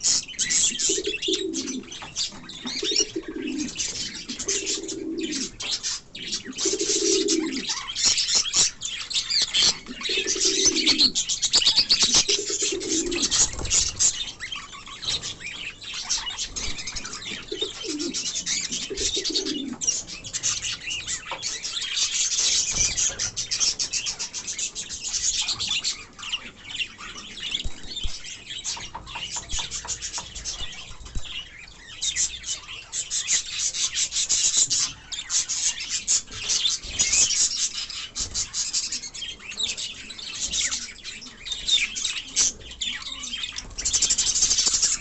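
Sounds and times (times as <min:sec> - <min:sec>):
low falling bird calls: 0:00.0 - 0:33.4
small birds chirping and chattering: 0:00.0 - 0:45.0.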